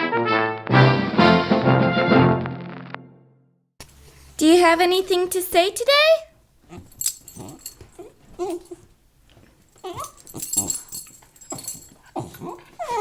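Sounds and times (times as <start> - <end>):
dog whining and grumbling: 6.6 - 13.0.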